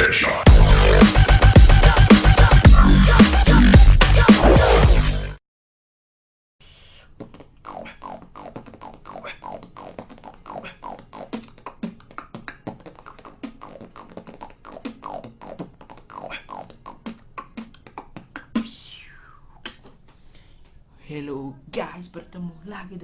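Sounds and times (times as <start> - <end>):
quiet beatboxing: 6.9 - 20.8.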